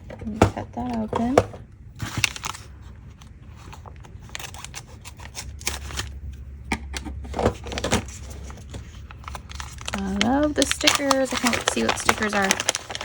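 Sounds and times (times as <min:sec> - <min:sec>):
package crinkling: 0:02.0 - 0:06.4, 0:07.4 - 0:13.0.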